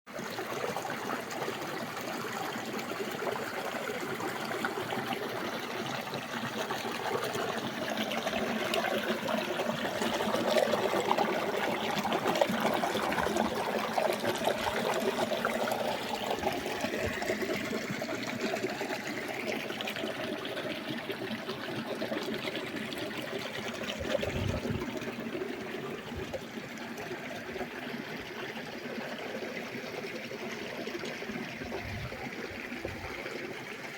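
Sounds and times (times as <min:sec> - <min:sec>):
water trickling and splashing: 0:00.1 - 0:33.9.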